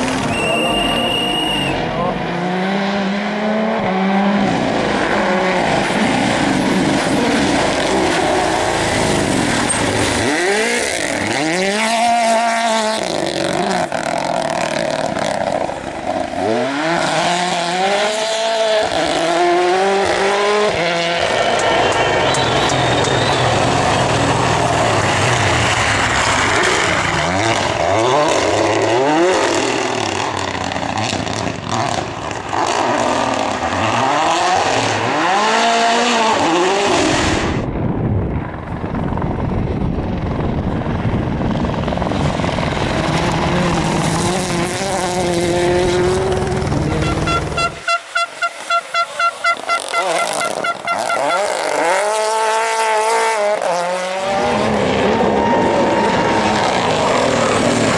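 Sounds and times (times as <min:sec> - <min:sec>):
rally car engines revving: 0:00.0 - 0:37.8, 0:38.9 - 0:57.9
rapid engine pulsing: 0:37.7 - 0:47.9.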